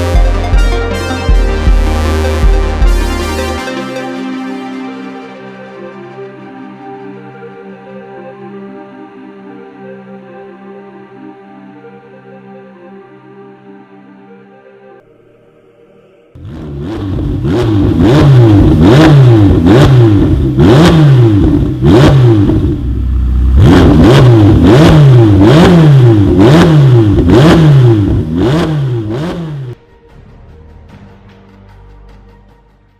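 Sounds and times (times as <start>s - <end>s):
car engine revving: 16.4s - 29.8s.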